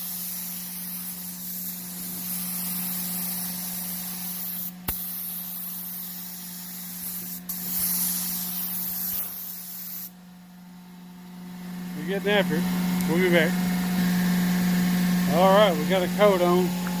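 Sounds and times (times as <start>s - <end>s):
paint spray gun hissing: 0.0s - 10.2s
steady low hum: 0.0s - 17.0s.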